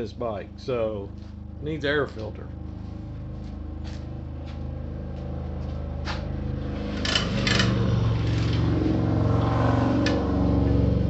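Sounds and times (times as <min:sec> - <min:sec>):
air compressor motor running: 0:02.4 - 0:11.0
sharp clicks of parts: 0:07.0 - 0:07.8.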